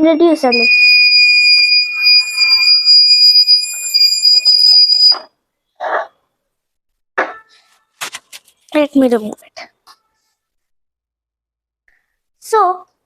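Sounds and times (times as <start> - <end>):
high-pitched buzzer alarm tone: 0.5 - 5.3.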